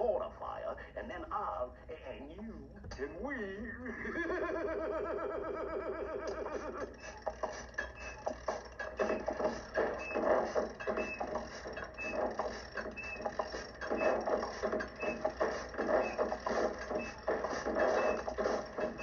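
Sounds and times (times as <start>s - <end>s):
rhythmic mechanical clatter: 4.2s - 19.0s.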